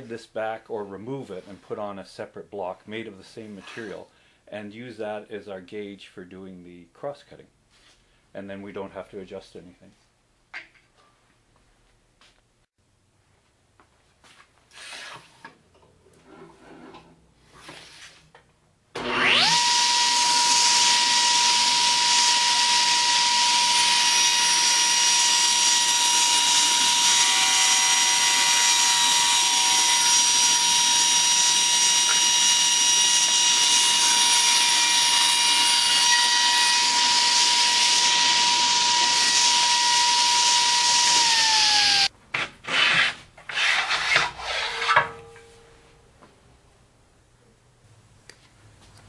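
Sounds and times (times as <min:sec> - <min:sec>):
table saw cutting wood: 0:19.0 - 0:42.1.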